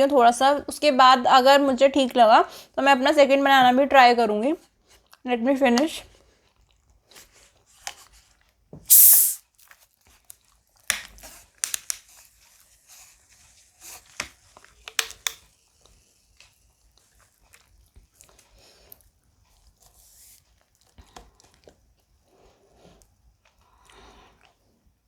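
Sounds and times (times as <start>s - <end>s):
short loud hiss: 8.9s - 9.4s
wet mouth smacks while eating: 8.9s - 9.4s.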